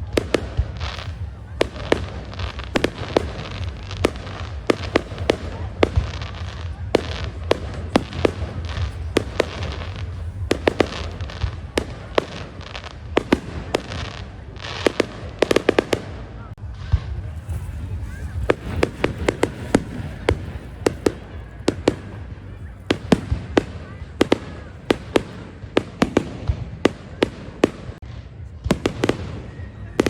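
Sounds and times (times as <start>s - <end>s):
fireworks bangs and cracks: 0.0s - 30.0s.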